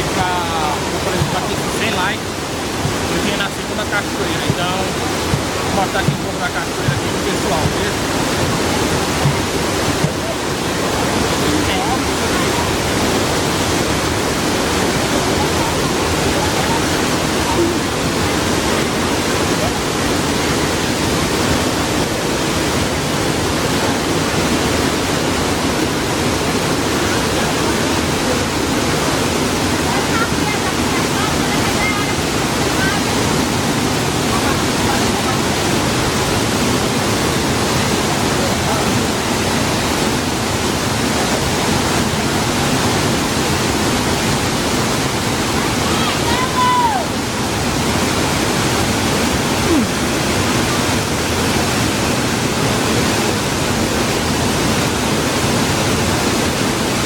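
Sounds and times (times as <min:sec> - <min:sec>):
waterfall roaring: 0:00.0 - 0:57.0.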